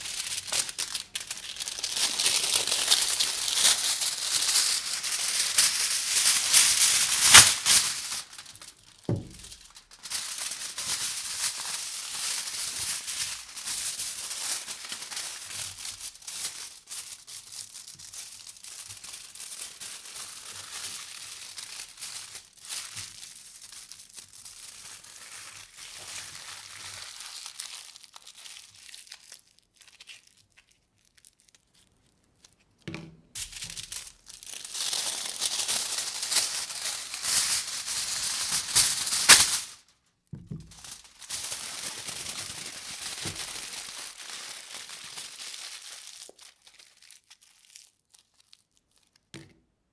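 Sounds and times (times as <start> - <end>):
aluminium foil crinkling: 0.0 - 49.3
dull knock: 9.1 - 9.6.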